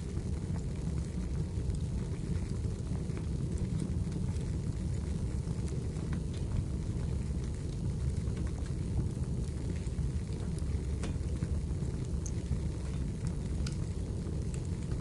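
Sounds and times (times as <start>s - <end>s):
fire crackling and popping: 0.0s - 15.0s
fire rumbling: 0.0s - 15.0s.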